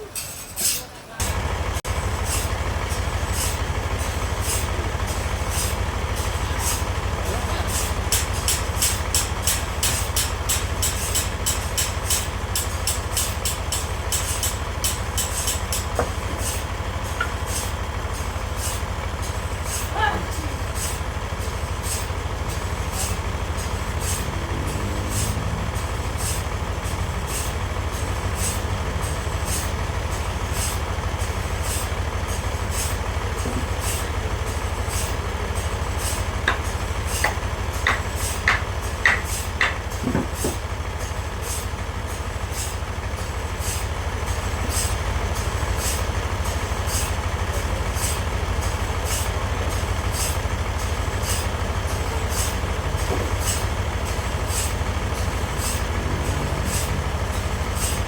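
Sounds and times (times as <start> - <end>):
sawmill machinery humming: 0.0 - 58.0
sharp knocks: 37.2 - 40.6.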